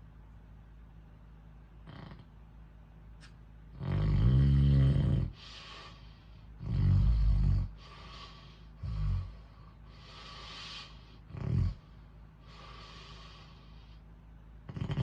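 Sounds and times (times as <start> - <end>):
fan running: 0.0 - 15.0
person snoring loudly: 1.9 - 2.2, 3.8 - 5.4, 6.6 - 7.8, 8.8 - 9.4, 11.3 - 11.8, 14.7 - 15.0
airy breath: 5.4 - 6.5, 7.8 - 11.2, 12.4 - 14.1.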